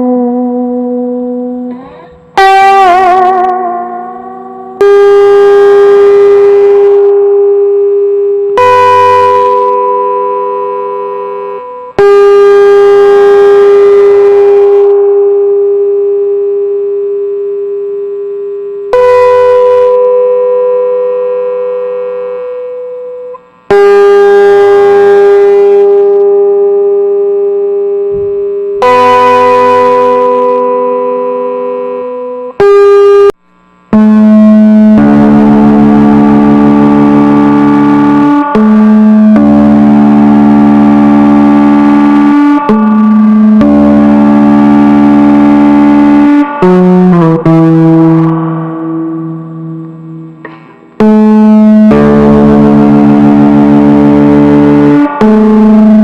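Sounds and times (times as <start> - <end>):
ringing struck notes: 46.5 - 55.2.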